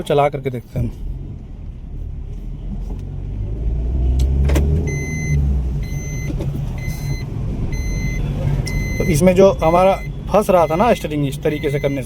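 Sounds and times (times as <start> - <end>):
car engine rumbling: 0.0 - 12.0
electronic warning beep: 4.9 - 12.0.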